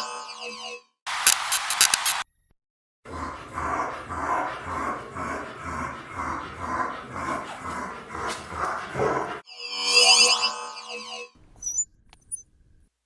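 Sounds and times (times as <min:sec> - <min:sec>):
dog noisy breathing: 0:03.2 - 0:09.4.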